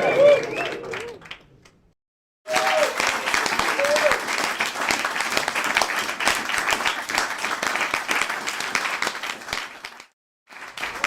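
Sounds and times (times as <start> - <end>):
crowd applauding and cheering: 0.0 - 1.4, 2.5 - 11.0.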